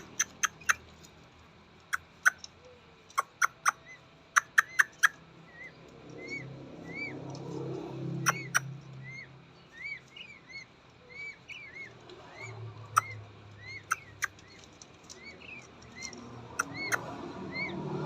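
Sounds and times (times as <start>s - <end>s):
chicks peeping: 0.0s - 1.1s, 1.8s - 17.8s.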